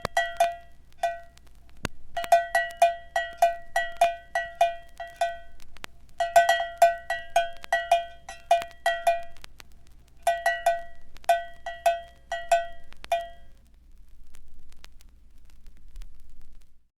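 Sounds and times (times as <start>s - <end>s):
cowbell clanging: 0.0s - 1.4s, 2.2s - 5.6s, 6.2s - 9.5s, 10.2s - 13.5s.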